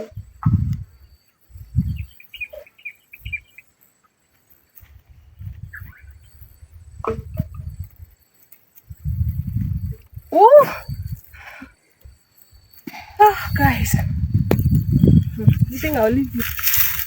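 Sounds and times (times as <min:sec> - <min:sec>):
small bird chirping: 0:00.1 - 0:11.2, 0:11.9 - 0:16.8
low thumps: 0:13.6 - 0:16.8.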